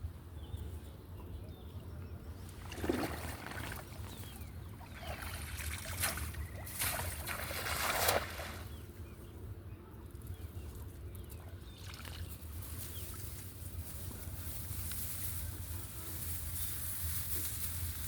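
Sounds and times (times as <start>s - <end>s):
river water splashing: 2.5s - 8.8s.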